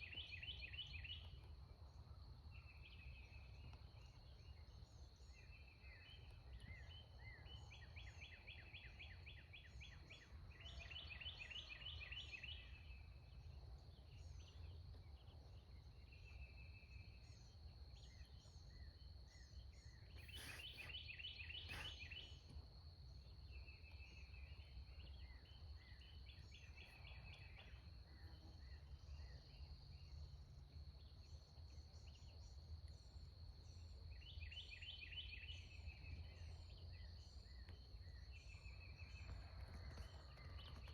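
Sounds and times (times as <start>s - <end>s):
songbirds trilling: 2.5s - 30.3s.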